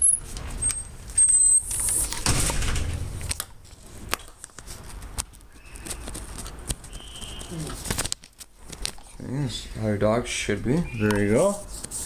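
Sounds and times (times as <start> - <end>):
rustling handling noise: 3.2 - 9.8.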